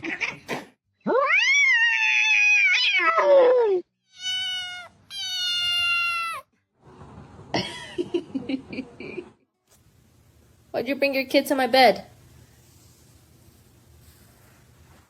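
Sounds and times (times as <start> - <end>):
cat meowing: 4.1 - 6.5.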